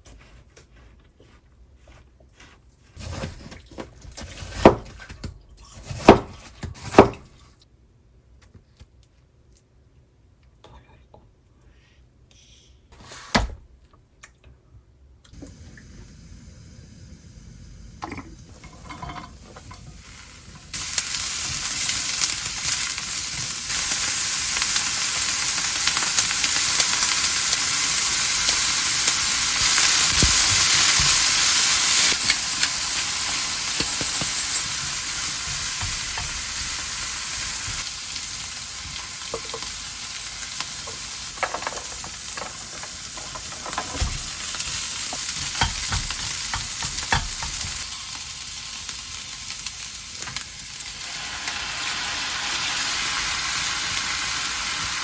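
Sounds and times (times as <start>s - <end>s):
food sizzling in a pan: 15.4s - 55.0s.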